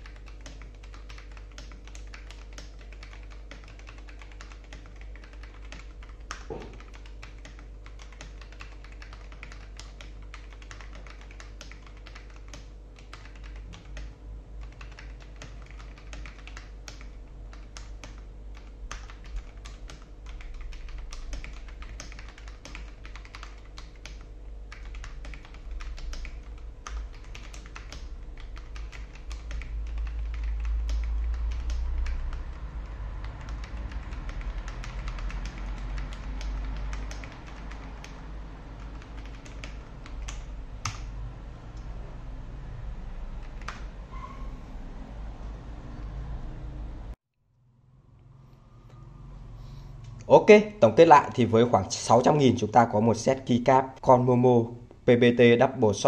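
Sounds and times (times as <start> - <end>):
mechanical keyboard typing: 0.0 - 41.1, 43.4 - 43.9.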